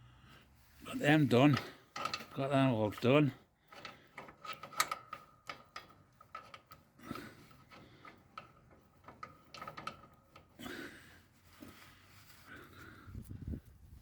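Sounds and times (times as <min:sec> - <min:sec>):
clicks and taps on metal parts: 0:01.5 - 0:10.6
soft rubbing rustles: 0:11.2 - 0:14.0.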